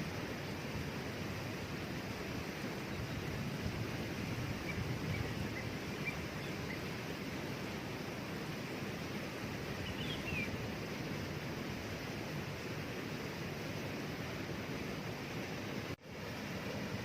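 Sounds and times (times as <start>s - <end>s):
waterfall rushing: 0.0s - 17.0s
bird chirps: 4.6s - 6.8s, 9.8s - 10.5s.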